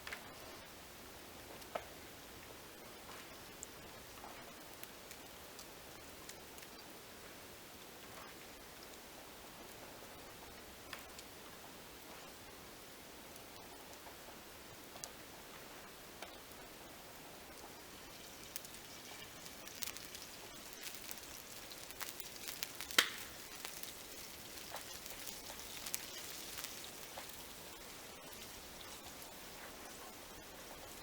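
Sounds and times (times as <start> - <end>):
fire crackling and popping: 0.0 - 31.0
food sizzling over fire: 0.0 - 31.0
sharp crack: 18.5 - 27.8.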